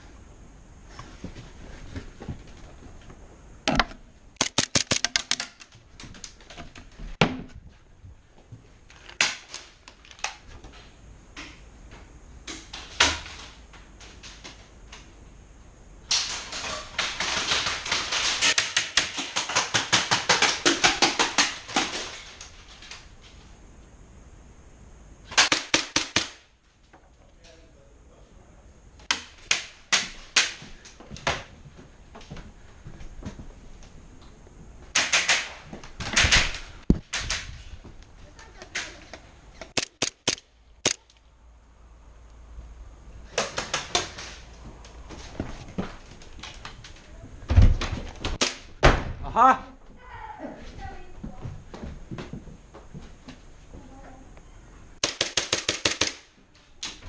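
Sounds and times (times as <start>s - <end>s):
airsoft guns firing: 3.7s - 5.6s, 25.3s - 26.5s, 34.9s - 35.6s, 39.7s - 41.1s, 55.0s - 56.3s.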